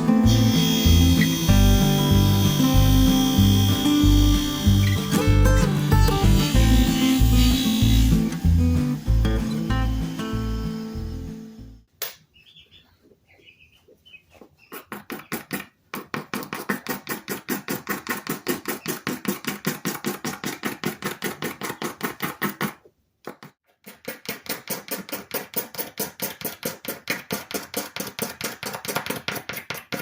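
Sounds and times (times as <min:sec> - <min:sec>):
hand scraping wood: 0:14.3 - 0:30.0.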